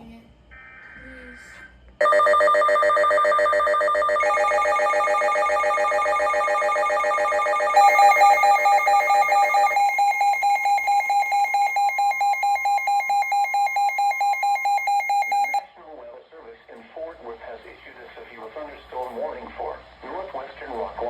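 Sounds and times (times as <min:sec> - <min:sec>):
weather radio alarms beeping: 0:02.0 - 0:15.7.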